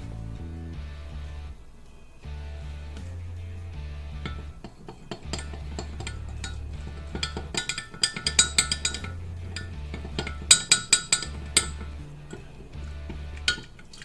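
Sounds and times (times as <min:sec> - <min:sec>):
background music with bass line: 0:00.0 - 0:14.0
utensil clinking against dishes: 0:04.2 - 0:14.0.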